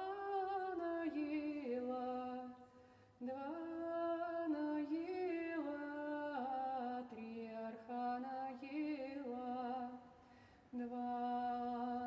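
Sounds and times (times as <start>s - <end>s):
woman singing unaccompanied: 0.0s - 10.1s, 10.7s - 12.0s
singer breathing in: 10.2s - 10.7s.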